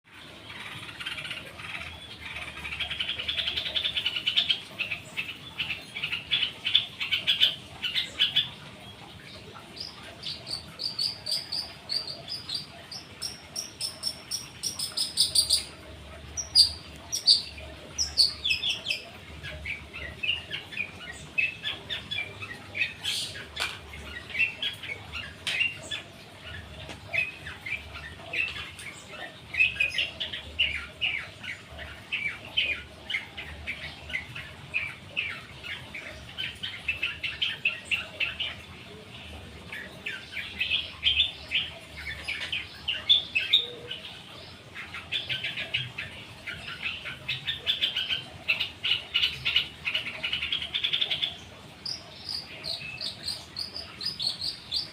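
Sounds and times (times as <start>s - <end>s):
other birds calling: 0.1s - 54.9s
bird singing chirping notes: 9.6s - 38.6s.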